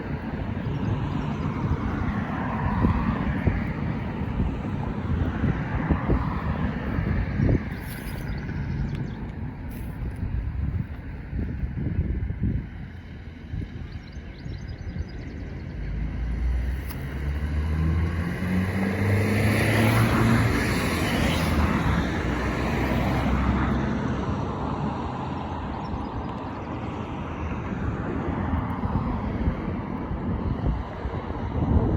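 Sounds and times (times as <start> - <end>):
motor vehicle driving past: 15.7 - 24.7.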